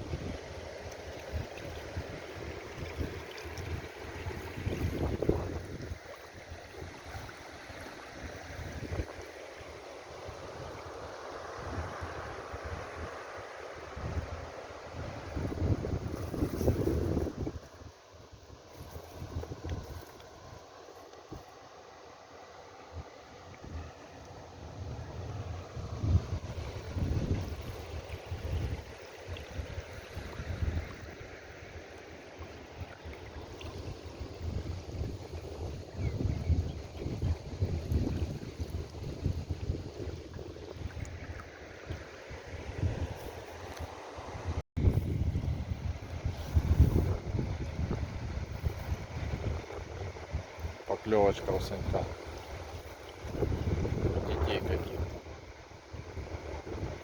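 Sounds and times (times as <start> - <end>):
wind gusting over microphone: 2.9 - 6.0, 15.0 - 17.8, 24.8 - 28.9, 33.6 - 43.6, 44.3 - 57.0.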